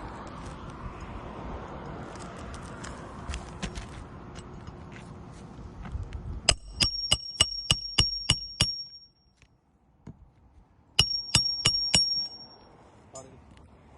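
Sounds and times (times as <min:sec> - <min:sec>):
metal strikes ringing: 0:06.5 - 0:09.3, 0:11.0 - 0:12.7.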